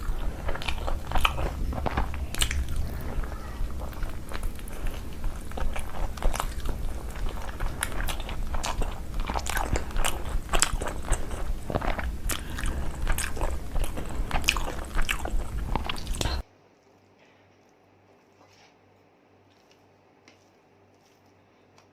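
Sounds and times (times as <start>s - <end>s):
wet mouth clicks: 0.0s - 16.4s
person chewing and crunching food: 0.0s - 18.8s, 19.4s - 21.9s.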